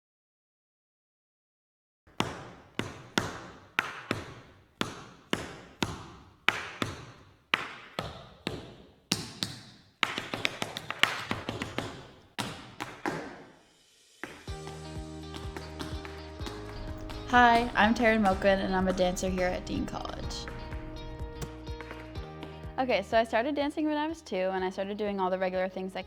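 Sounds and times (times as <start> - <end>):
tap shoes on hard floor: 2.1 - 13.6, 14.2 - 22.8.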